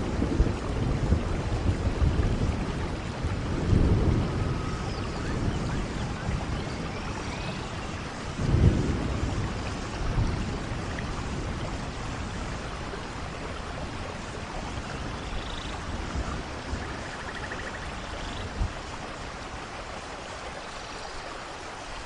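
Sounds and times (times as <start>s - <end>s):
thunder rumbling: 0.0s - 19.1s
steady rain: 0.0s - 22.0s.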